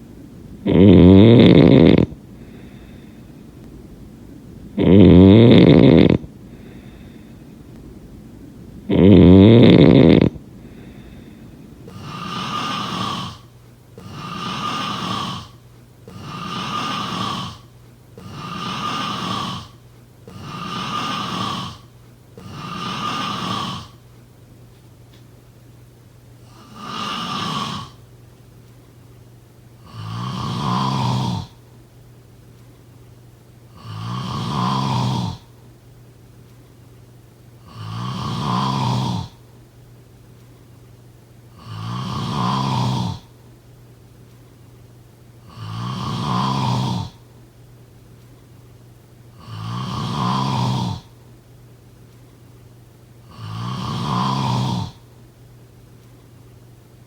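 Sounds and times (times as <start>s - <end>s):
person snoring: 0.6s - 3.3s, 4.7s - 7.3s, 8.8s - 24.0s, 26.4s - 28.0s, 29.8s - 31.6s, 33.7s - 35.5s, 37.6s - 39.4s, 41.5s - 43.3s, 45.4s - 47.2s, 49.4s - 51.1s, 53.2s - 55.0s.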